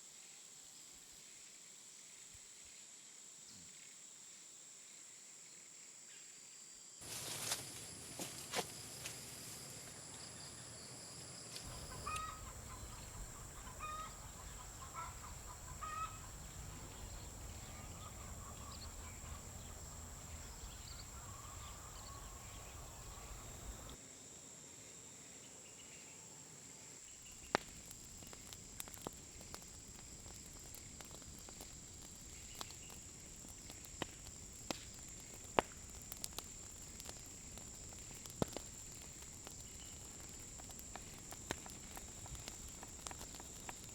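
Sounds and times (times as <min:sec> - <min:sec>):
chickens clucking: 0:11.7 - 0:24.0.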